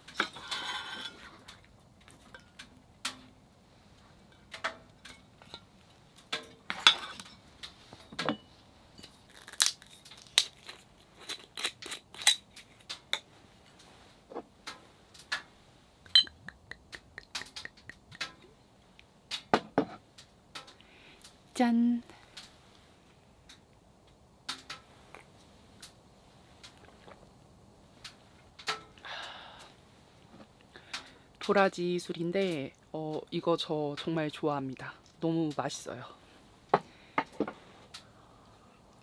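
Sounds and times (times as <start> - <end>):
dishes and utensils clinking: 0.1 - 1.3, 6.4 - 7.4, 8.0 - 9.2, 16.1 - 16.4.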